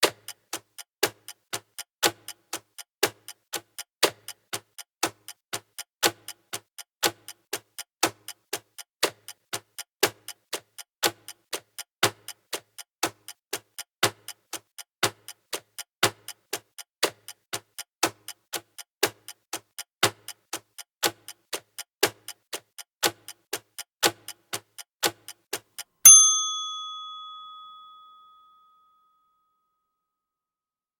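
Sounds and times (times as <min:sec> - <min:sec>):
clock ticking: 0:00.0 - 0:26.2
timer ding: 0:26.1 - 0:28.7.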